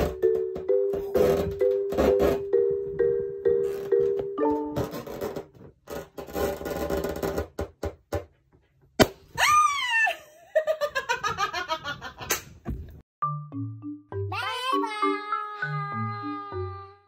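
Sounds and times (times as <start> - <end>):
sharp pop: 9.0 - 9.2.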